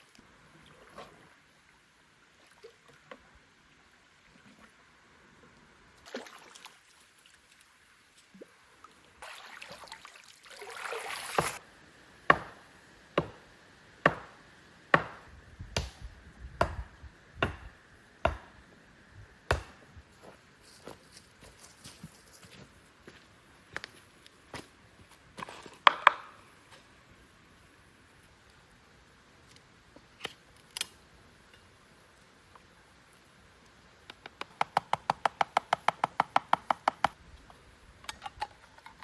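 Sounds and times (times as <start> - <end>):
chopping strikes on wood: 12.3 - 12.6, 13.2 - 13.4, 14.0 - 14.4, 15.0 - 18.6, 19.5 - 19.8, 25.8 - 26.3, 34.4 - 37.2.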